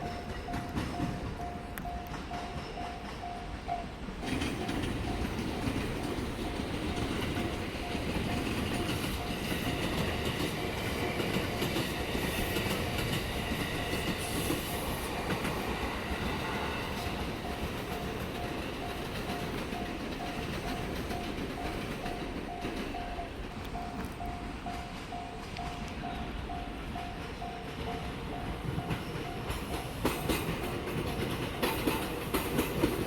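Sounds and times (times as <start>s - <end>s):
train wheels clattering over rail joints: 0.0s - 3.4s, 4.2s - 33.0s
crossing warning bell: 0.0s - 33.0s.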